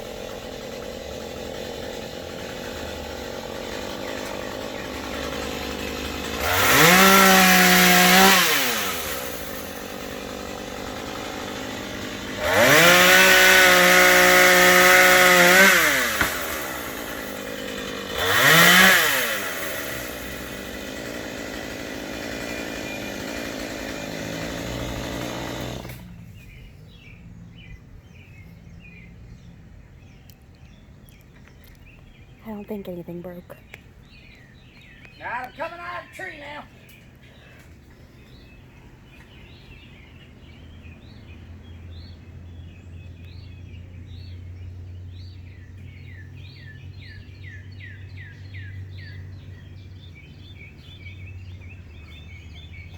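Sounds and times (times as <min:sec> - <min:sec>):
chainsaw idling and revving: 0:00.0 - 0:27.7, 0:34.2 - 0:52.9.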